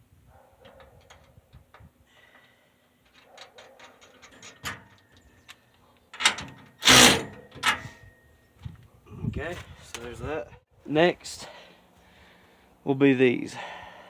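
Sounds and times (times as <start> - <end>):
ratchet wrench clicking: 6.8 - 7.2.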